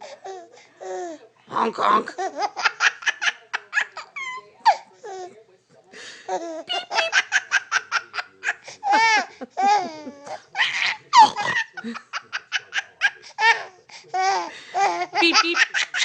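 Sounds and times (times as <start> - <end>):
baby laughing and squealing: 6.5 - 11.7.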